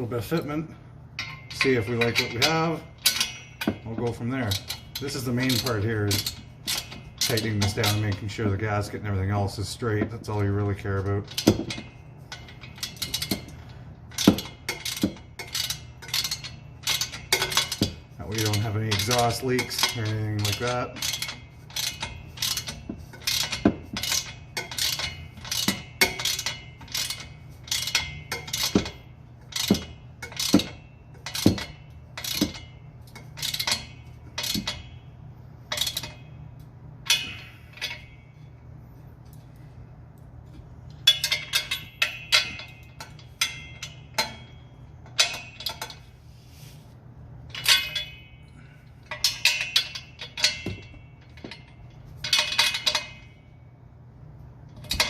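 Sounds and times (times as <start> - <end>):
wrench clinking on metal: 0.0 - 38.6, 40.4 - 46.1, 47.5 - 53.6, 54.7 - 55.0.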